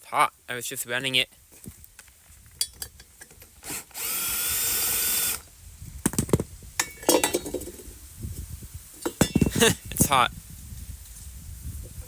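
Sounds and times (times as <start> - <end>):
metal clinks and knocks: 2.6 - 3.6, 6.1 - 7.9, 9.0 - 9.9
power drill whining: 3.6 - 5.5.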